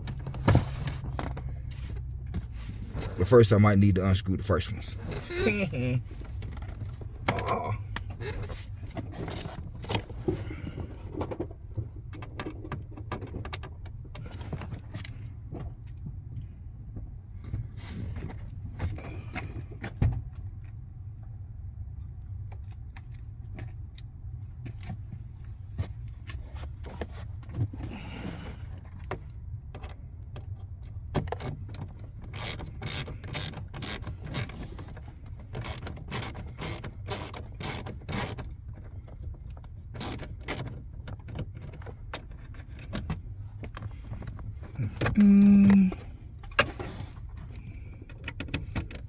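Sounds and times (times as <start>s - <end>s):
sharp metallic clicks and rattles: 31.2s - 38.5s, 40.0s - 43.1s.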